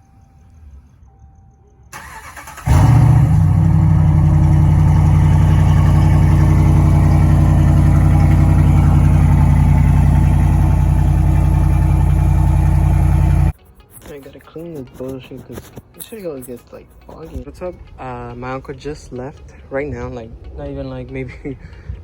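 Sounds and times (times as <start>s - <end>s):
engine running steadily: 2.6s - 13.5s.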